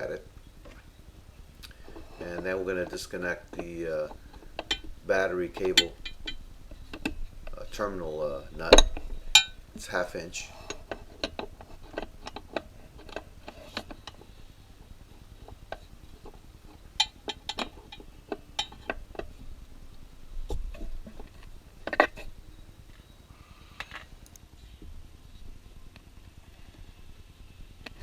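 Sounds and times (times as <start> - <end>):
hand tools clinking against metal: 1.6 - 23.2.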